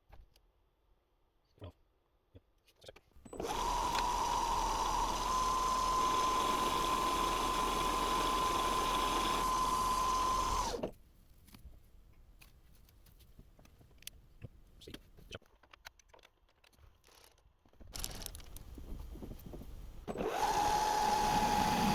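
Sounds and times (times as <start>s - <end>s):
metal lathe whining: 3.3s - 10.8s, 20.1s - 21.9s.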